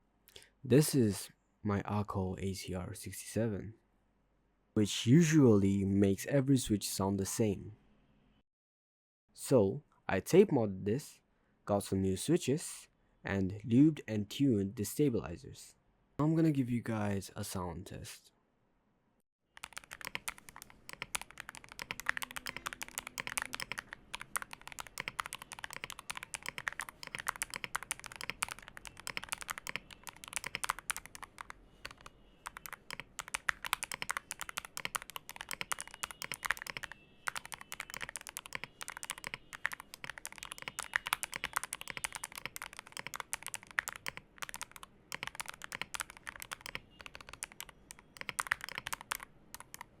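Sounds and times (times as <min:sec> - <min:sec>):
fast mechanical keyboard typing: 0:19.6 - 0:50.0.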